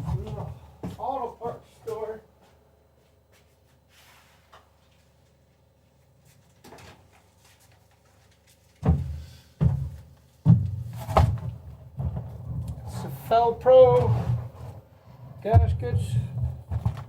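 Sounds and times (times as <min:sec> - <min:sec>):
faint steady hum: 0:00.0 - 0:17.0
dull heavy thumps: 0:08.8 - 0:17.0.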